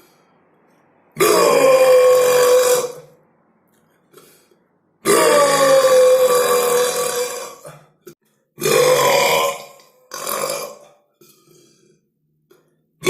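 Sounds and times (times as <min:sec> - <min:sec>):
person belching loudly: 0:01.2 - 0:03.1, 0:05.0 - 0:07.9, 0:08.6 - 0:11.0.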